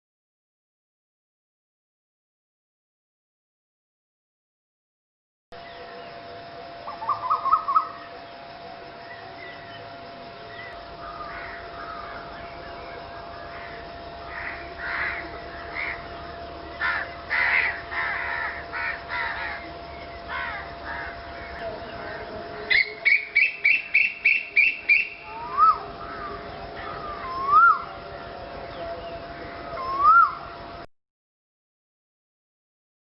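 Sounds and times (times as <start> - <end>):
birds calling harshly: 6.9 - 8.1, 9.0 - 30.5.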